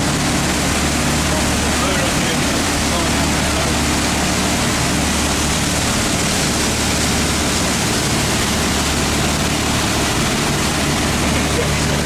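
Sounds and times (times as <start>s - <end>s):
boat engine humming: 0.0s - 12.0s
wind and water rushing: 0.0s - 12.0s.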